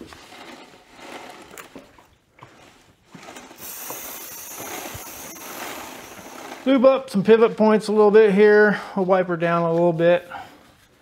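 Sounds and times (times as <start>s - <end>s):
tools and parts clattering: 0.0s - 7.2s
aerosol can spraying: 3.6s - 6.3s.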